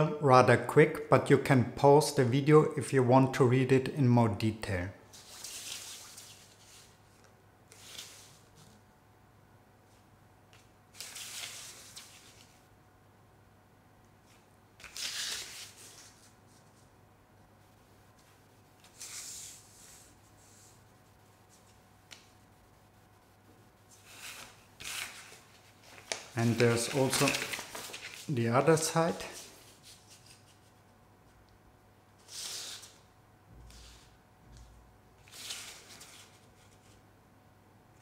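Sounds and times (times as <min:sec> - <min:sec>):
paper rustling: 0:05.1 - 0:08.8, 0:10.5 - 0:12.6, 0:14.2 - 0:16.9, 0:18.2 - 0:22.5, 0:23.9 - 0:30.9, 0:35.2 - 0:37.0.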